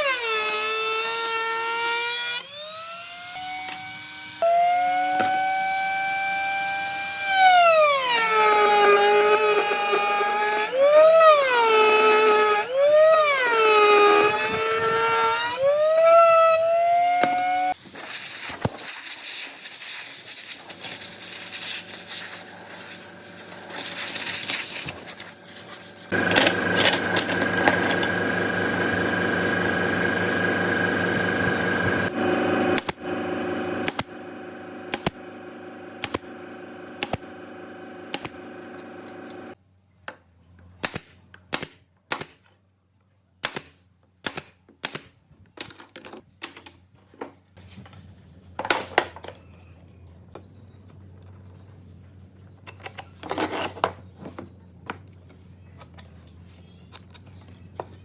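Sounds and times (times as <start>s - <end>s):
power tool motor pitch sliding up: 0.0s - 17.8s, 21.2s - 39.6s
machine running steady tone: 26.0s - 39.6s.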